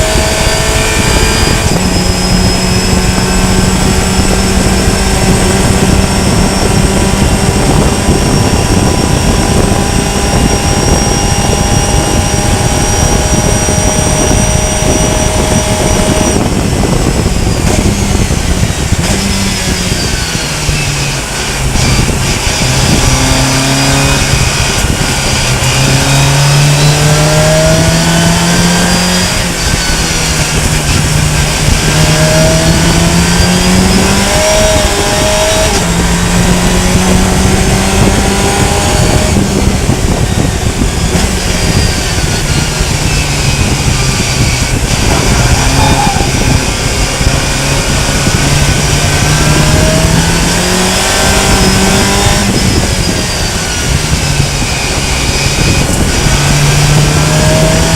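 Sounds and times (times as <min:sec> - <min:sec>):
race car engine running hard: 0:00.0 - 0:57.9.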